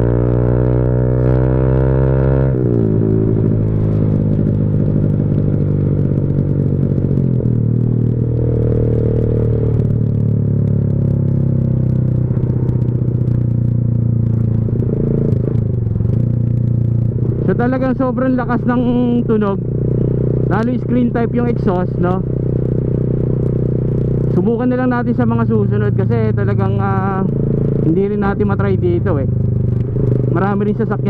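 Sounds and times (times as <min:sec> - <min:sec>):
loud motorcycle engine revving: 0:00.0 - 0:10.4, 0:17.2 - 0:31.0.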